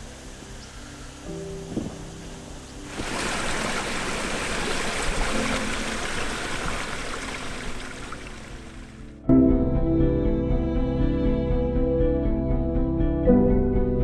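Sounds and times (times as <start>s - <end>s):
faint background music: 0.0s - 3.7s
rushing water: 0.0s - 9.2s.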